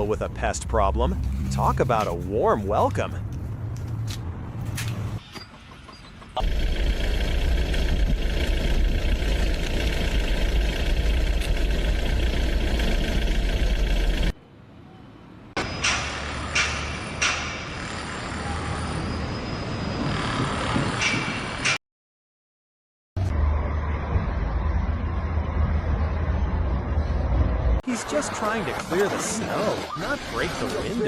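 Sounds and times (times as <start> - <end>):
loud engine rumble: 5.8 - 14.4.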